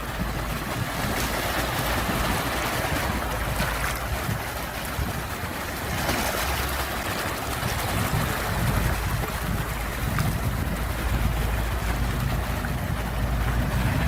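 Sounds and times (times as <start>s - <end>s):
sea waves washing: 0.0s - 14.0s
low rumble: 7.6s - 14.0s.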